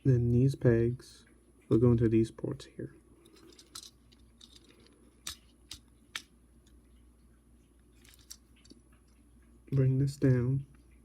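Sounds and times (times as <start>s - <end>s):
faint fumbling with plastic parts: 3.2s - 9.9s
sharp plastic clicks: 3.5s - 6.8s.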